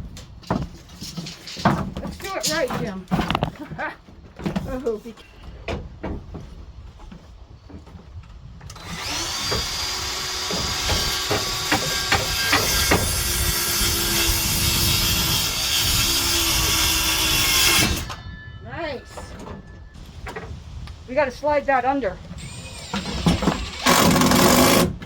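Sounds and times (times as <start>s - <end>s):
power saw cutting wood: 8.7s - 18.2s, 22.4s - 25.0s
sharp knocks: 9.4s - 13.2s.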